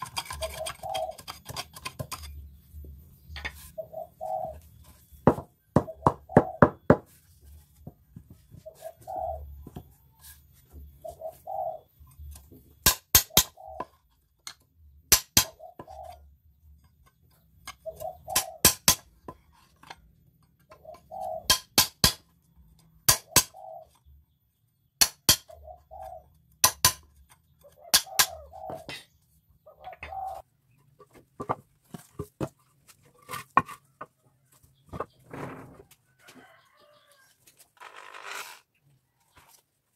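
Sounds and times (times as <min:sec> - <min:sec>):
mallet striking chisel: 0:12.8 - 0:13.6, 0:15.1 - 0:15.6, 0:18.4 - 0:19.1, 0:21.4 - 0:22.2, 0:23.1 - 0:23.5, 0:25.0 - 0:25.5, 0:26.6 - 0:27.1, 0:27.9 - 0:28.3.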